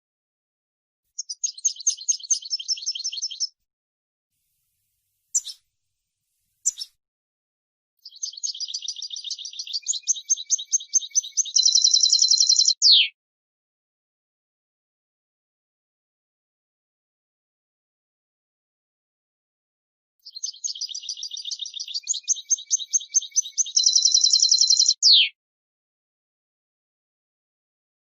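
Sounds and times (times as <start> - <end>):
finch singing: 1.2 - 3.6, 5.3 - 5.6, 6.6 - 7.0, 8.0 - 13.1, 20.2 - 25.3.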